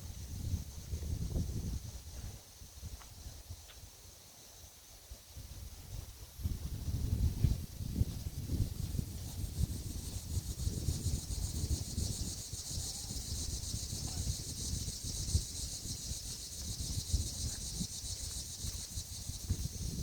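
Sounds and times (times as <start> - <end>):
wind buffeting microphone: 0.0 - 3.7, 5.4 - 20.0
insect chorus: 0.0 - 20.0.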